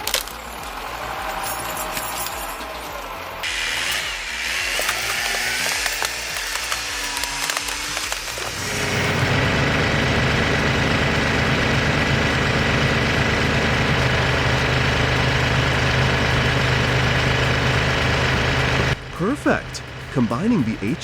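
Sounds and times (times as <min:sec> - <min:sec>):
heavy engine running steadily: 0:04.8 - 0:21.0.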